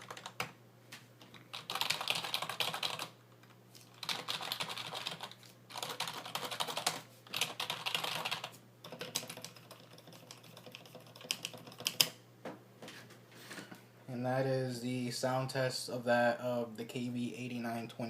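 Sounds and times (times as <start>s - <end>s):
keyboard typing: 0.0s - 0.5s, 1.2s - 3.1s, 3.9s - 12.2s.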